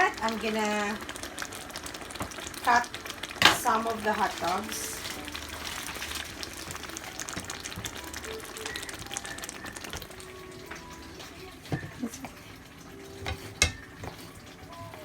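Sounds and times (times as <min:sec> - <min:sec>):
sauce sizzling in a pan: 0:00.0 - 0:15.0.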